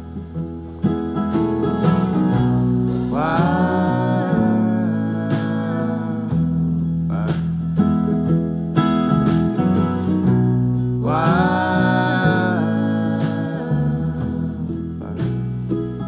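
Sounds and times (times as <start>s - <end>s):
acoustic guitar: 0.0s - 16.0s
person singing: 2.9s - 7.6s, 11.0s - 15.6s.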